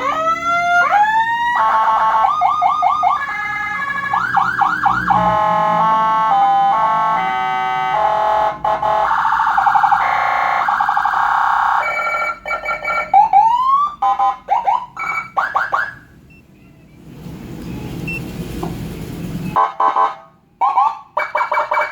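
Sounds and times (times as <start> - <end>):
electronic siren cycling tones: 0.0 - 16.0.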